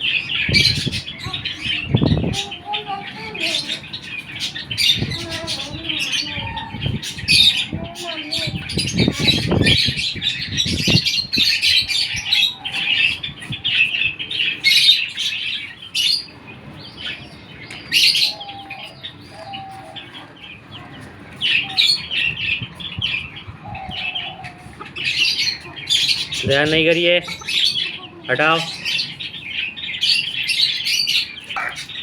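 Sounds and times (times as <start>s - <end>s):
chickens chirping: 0.0s - 32.0s.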